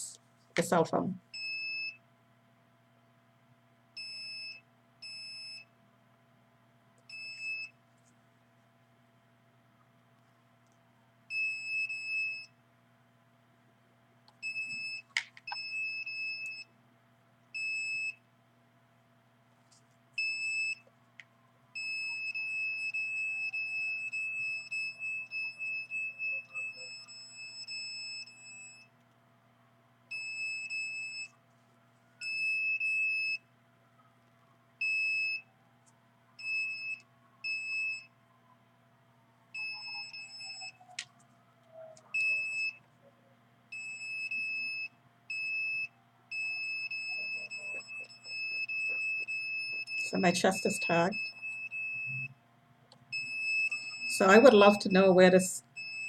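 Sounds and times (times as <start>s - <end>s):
detector alarm beeping: 21.8s - 28.9s, 39.6s - 41.0s, 41.8s - 42.8s, 43.7s - 52.4s, 53.1s - 56.0s.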